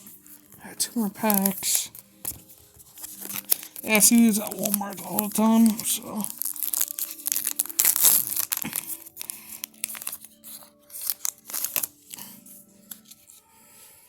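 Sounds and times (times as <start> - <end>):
plastic wrapper tearing and crinkling: 0.0 - 13.4.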